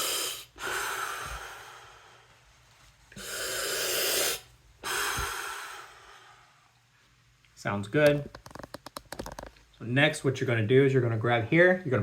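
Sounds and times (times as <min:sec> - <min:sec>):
regulator breaths hissing: 0:00.0 - 0:02.4, 0:03.1 - 0:06.8.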